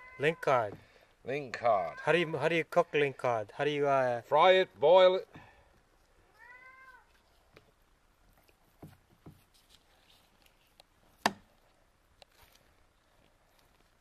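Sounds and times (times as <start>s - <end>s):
cat meowing: 0.0s - 0.6s, 1.6s - 2.4s, 6.3s - 7.1s.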